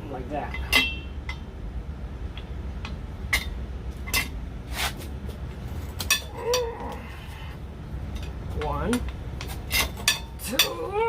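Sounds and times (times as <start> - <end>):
metal scrape: 4.1 - 5.1.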